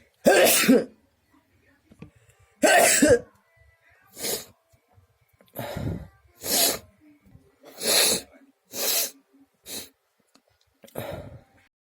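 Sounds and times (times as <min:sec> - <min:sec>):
person sneezing explosively: 0:07.8 - 0:09.9.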